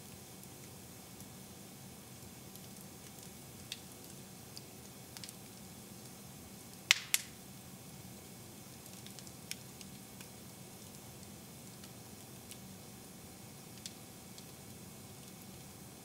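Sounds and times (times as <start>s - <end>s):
wood fire crackling: 0.0s - 16.0s
loud fire pops: 6.9s - 7.4s.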